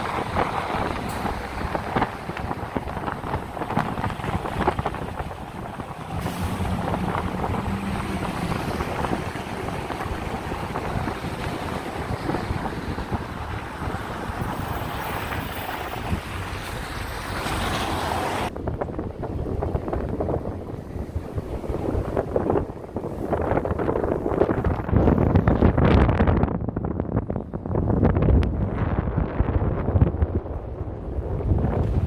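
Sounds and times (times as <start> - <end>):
car road and wind noise: 0.0 - 32.0.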